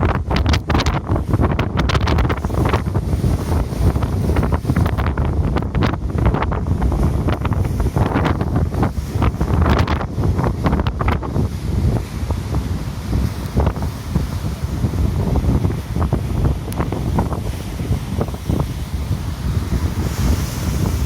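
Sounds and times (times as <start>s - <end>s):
heavy surf rushing: 0.0s - 21.0s
wind buffeting microphone: 0.0s - 21.0s.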